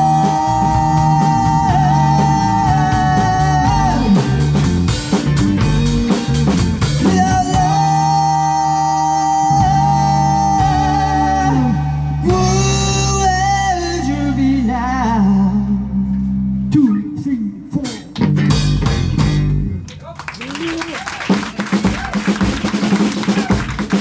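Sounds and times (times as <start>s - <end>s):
person singing: 0.0s - 4.6s, 7.0s - 15.9s
guitar and bass: 0.0s - 19.9s
drum hits: 21.3s - 24.0s.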